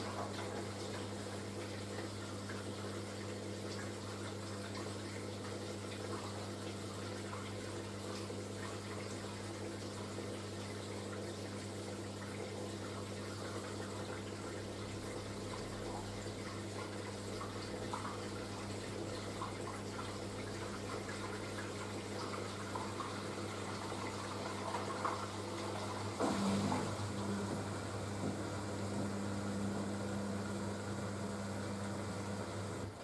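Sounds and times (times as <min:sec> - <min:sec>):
washing machine electric hum: 0:00.0 - 0:33.0
water running into washing machine: 0:00.0 - 0:33.0.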